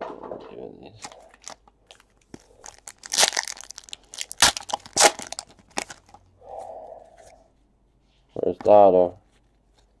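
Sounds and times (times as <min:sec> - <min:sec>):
packaging crinkling: 0:01.0 - 0:06.2.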